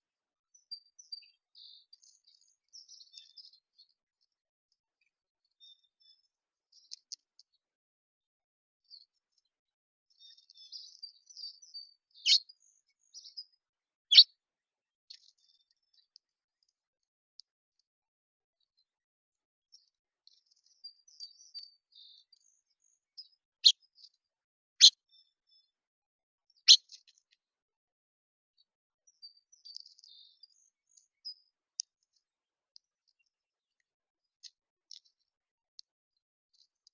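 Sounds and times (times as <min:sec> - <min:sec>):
songbirds chirping and twittering: 0:00.0 - 0:36.9
loud sharp bird calls: 0:12.1 - 0:12.5, 0:26.7 - 0:26.9.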